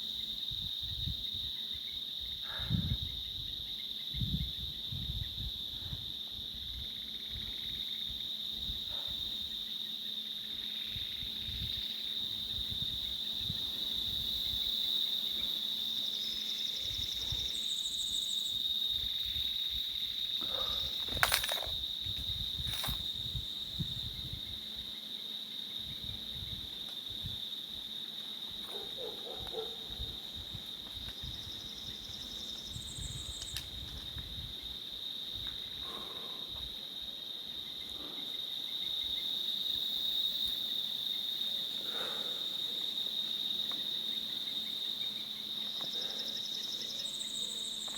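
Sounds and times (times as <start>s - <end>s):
insects trilling chorus: 0.0s - 47.9s.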